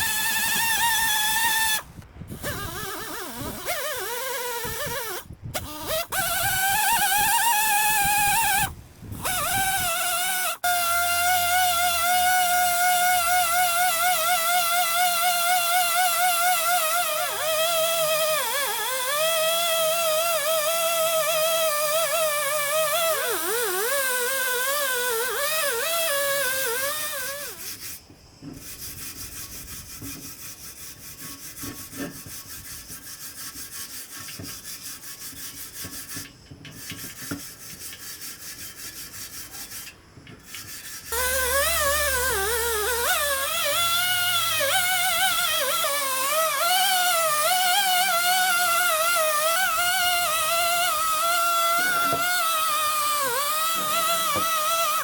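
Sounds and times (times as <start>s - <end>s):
scrubbing rust off metal: 24.0s - 55.0s.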